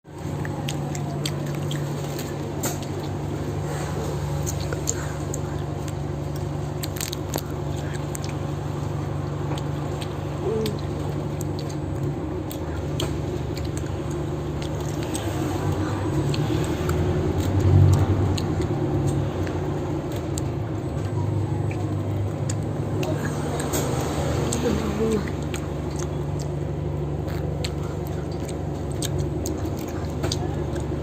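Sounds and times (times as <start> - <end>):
bus engine drone: 0.0 - 31.0.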